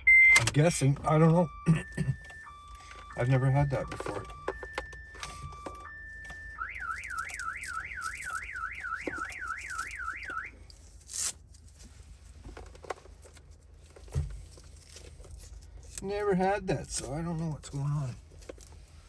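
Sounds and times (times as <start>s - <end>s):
car alarm siren: 0.0s - 10.7s.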